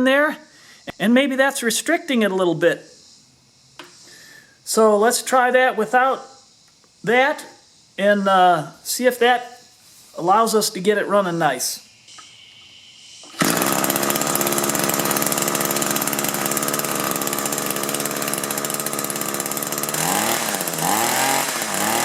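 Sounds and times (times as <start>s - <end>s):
hedge trimmer engine running: 13.3s - 22.0s.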